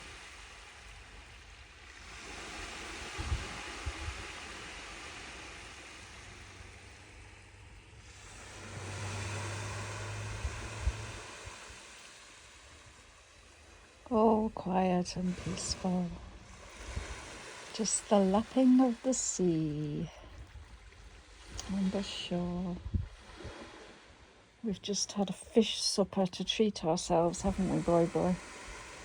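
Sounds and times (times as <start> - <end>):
small waves lapping on shore: 0.0 - 29.0
wind thumps on microphone: 2.6 - 4.5, 9.7 - 11.7, 22.7 - 23.7.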